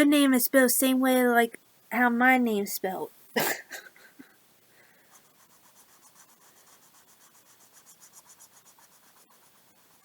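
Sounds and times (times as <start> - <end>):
pen scratching on paper: 5.0 - 10.0.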